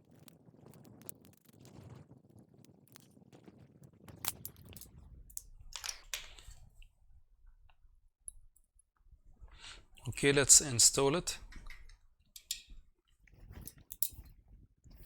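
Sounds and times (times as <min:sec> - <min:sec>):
sharp clicks and ticks: 0:04.1 - 0:06.5, 0:10.6 - 0:12.8
rustling of parts on workbench: 0:05.7 - 0:06.6.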